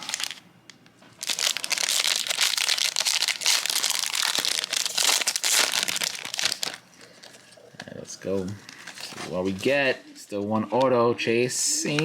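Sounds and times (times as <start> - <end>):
foil wrapper crinkling: 0.0 - 0.4, 1.2 - 7.5.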